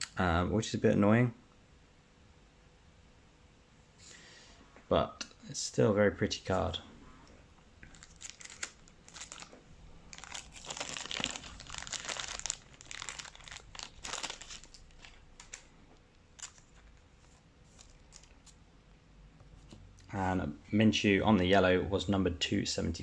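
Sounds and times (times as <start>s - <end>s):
plastic crinkling and rustling: 7.8s - 18.6s.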